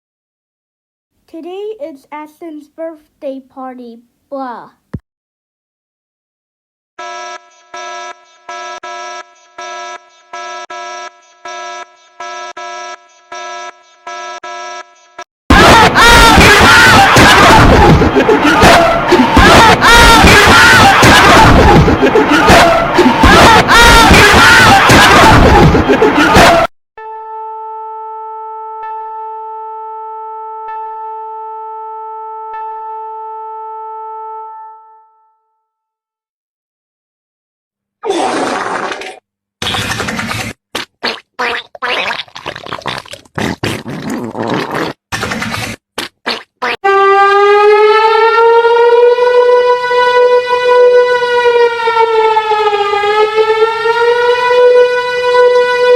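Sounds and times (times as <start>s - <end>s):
buzzy synthesized alarm tone: 27.0s - 35.2s, 46.9s - 55.9s.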